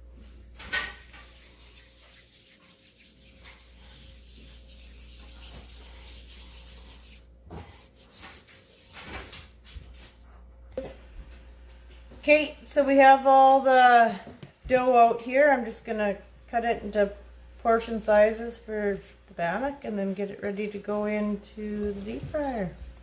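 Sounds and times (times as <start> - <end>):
hands kneading sticky dough: 1.1 - 10.2.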